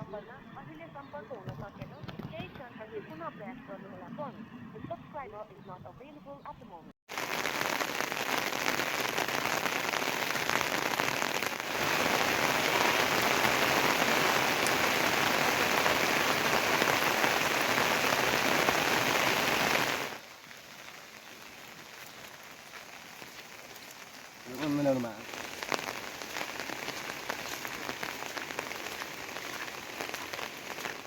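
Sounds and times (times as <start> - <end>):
heavy rain falling: 7.1 - 31.0.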